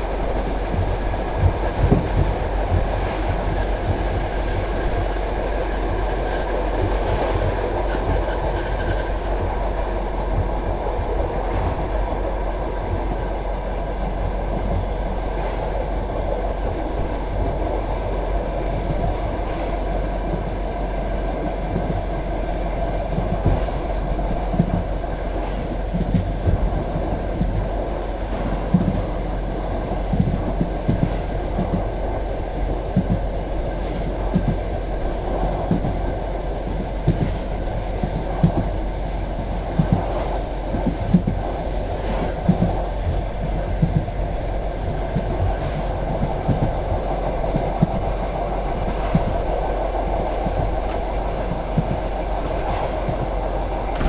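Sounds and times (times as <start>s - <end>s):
train wheels rumbling on rail: 0.0s - 54.0s
wheels clacking over rail joints: 48.8s - 54.0s.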